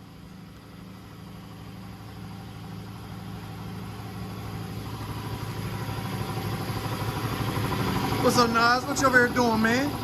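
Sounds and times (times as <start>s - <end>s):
engine idling: 0.0s - 10.0s.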